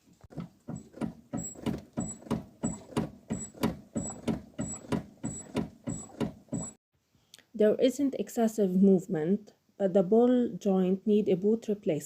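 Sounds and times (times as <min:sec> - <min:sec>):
ball joint creaking and knocking: 0:00.3 - 0:06.8.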